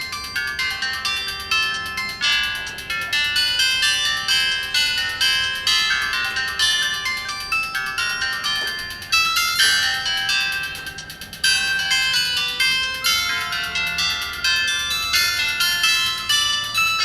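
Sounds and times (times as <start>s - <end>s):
mobile phone ringtone: 0.0s - 17.0s.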